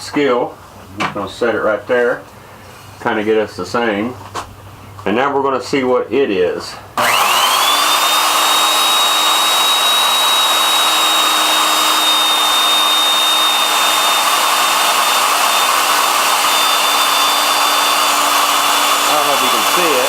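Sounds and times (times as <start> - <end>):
wood router motor whine: 7.0 - 20.0.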